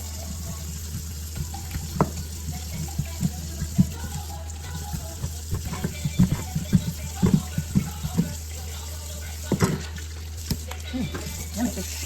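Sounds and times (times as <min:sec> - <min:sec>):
water running from tap into sink: 0:00.0 - 0:12.0
clatter of items in sink: 0:09.4 - 0:12.0.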